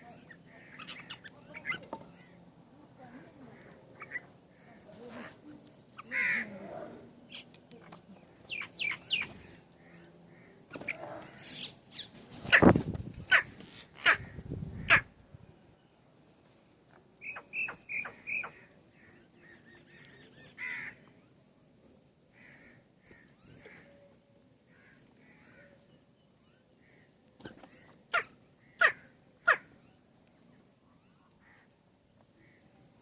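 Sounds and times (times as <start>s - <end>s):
birds calling: 0.0s - 2.5s, 3.4s - 6.6s, 7.3s - 15.1s, 17.2s - 21.1s, 24.7s - 30.0s.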